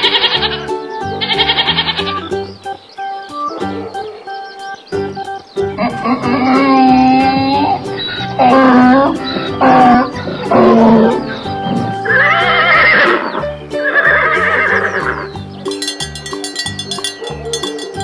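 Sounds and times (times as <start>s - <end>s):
farm animal calls: 0.0s - 15.8s, 17.0s - 18.0s
music with bass beat: 5.0s - 13.8s, 15.3s - 18.0s.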